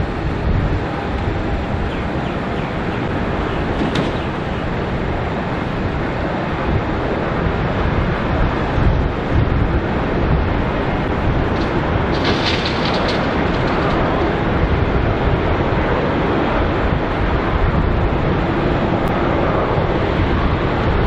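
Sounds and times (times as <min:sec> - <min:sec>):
jet engine rumble: 0:00.0 - 0:21.0.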